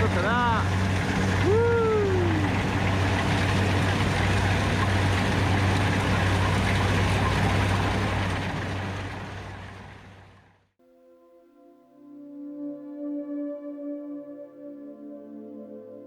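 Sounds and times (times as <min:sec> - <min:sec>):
combine harvester engine hum: 0:00.0 - 0:10.6.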